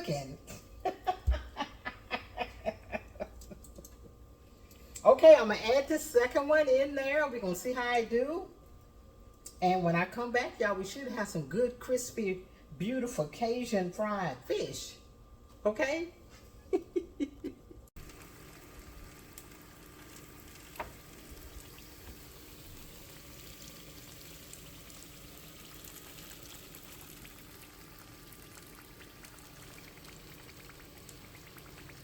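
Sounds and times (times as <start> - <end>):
fish frying in hot oil: 18.0 - 32.0.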